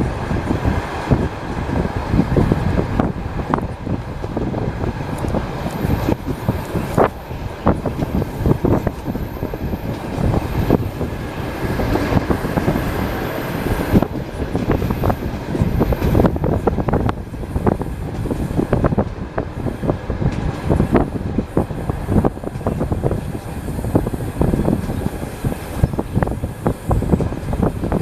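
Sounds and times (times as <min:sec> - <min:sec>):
train rumble: 0:00.0 - 0:28.0.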